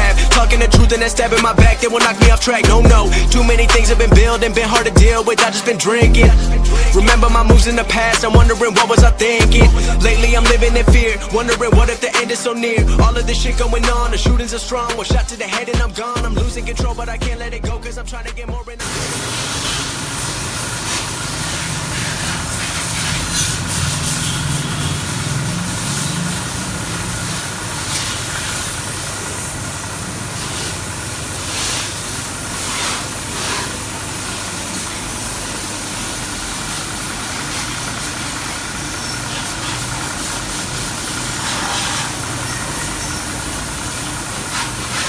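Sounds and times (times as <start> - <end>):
pressure washer motor hum: 0.0 - 11.8, 18.8 - 45.0
high-pressure water jet hissing: 18.8 - 45.0.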